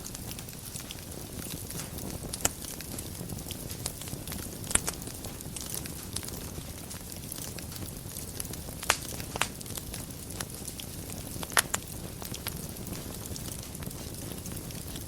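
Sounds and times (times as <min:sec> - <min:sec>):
fire crackling in fireplace: 0:00.0 - 0:15.0
sharp pops of fire: 0:00.0 - 0:15.0.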